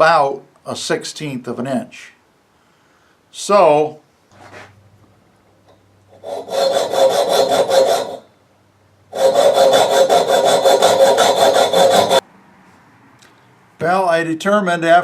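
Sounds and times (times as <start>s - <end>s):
tool rasping on copper: 6.1s - 8.3s, 9.1s - 12.2s.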